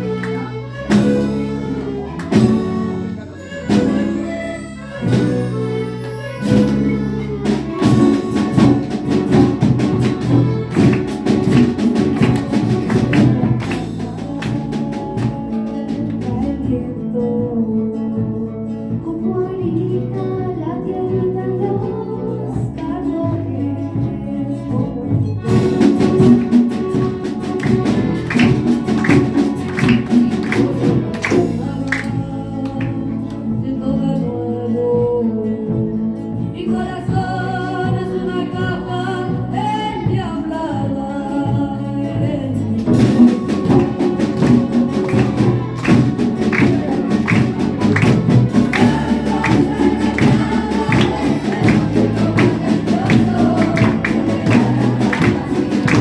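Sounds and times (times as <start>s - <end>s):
orchestra playing lively piece: 0.0s - 14.8s, 25.4s - 32.2s, 42.8s - 56.0s
sharp percussion strikes: 5.1s - 16.3s, 25.5s - 32.1s, 42.9s - 56.0s.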